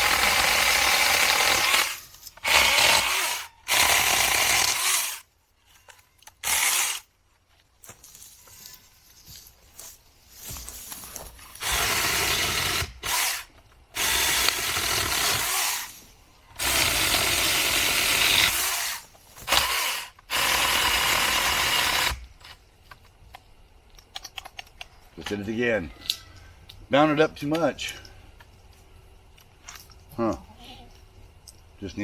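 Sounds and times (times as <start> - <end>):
electric chainsaw cutting branches: 0.0 - 5.2, 6.4 - 7.1, 11.6 - 16.0, 16.6 - 22.3.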